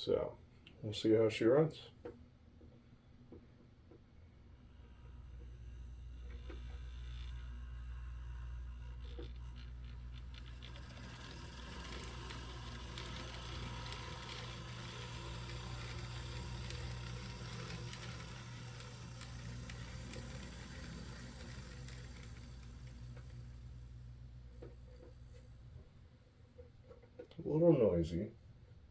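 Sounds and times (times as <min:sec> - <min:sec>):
model train motor whirring: 0:04.6 - 0:25.9.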